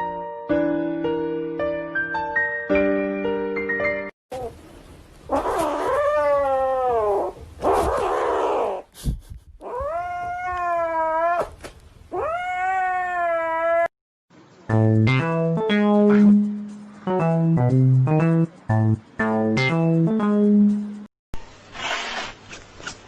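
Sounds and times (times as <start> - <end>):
cat yowling: 5.3 - 8.8, 9.6 - 13.9.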